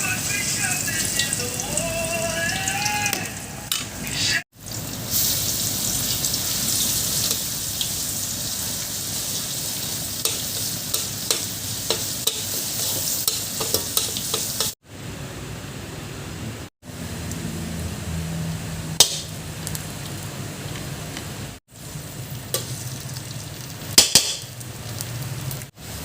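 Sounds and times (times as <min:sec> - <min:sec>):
food sizzling in a pan: 0:00.0 - 0:14.8, 0:21.6 - 0:26.0.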